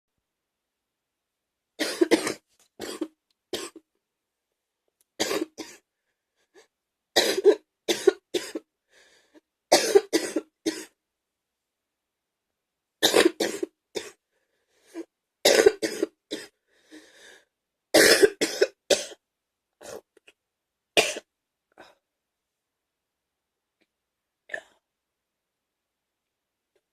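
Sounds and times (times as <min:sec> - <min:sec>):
person coughing wetly: 0:01.8 - 0:03.8, 0:05.2 - 0:05.8, 0:07.2 - 0:08.6, 0:09.7 - 0:11.0, 0:13.0 - 0:14.2, 0:15.4 - 0:16.5, 0:18.0 - 0:19.2, 0:21.0 - 0:21.3.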